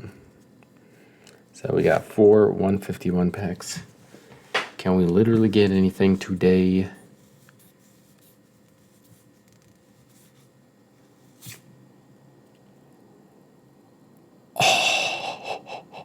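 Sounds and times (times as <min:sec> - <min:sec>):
person gasping: 0:14.6 - 0:16.0.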